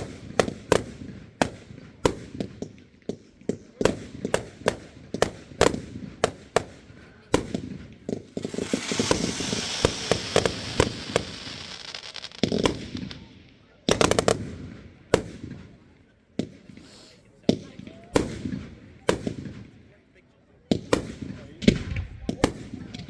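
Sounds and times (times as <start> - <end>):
fireworks bangs: 3.8 - 15.6
fireworks crackling hiss: 7.5 - 14.4, 16.8 - 17.3.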